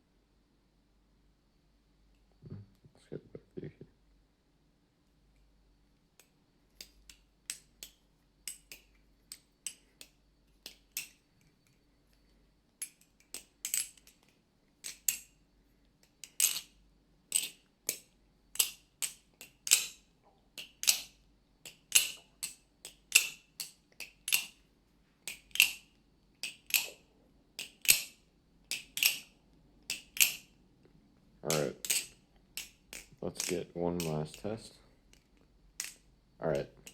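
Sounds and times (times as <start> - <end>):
butterfly knife clacking: 17.3 - 20.0, 20.6 - 24.6, 25.3 - 27.0, 27.6 - 29.3, 29.9 - 30.6, 31.5 - 34.5.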